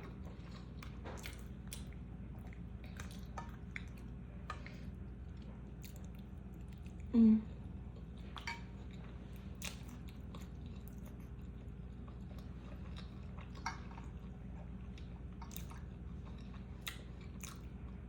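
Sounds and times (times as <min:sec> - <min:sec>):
wet chewing and mouth smacks: 0:00.0 - 0:07.1, 0:07.9 - 0:18.0
steady low hum: 0:00.0 - 0:18.0
low voice hum: 0:07.0 - 0:07.8.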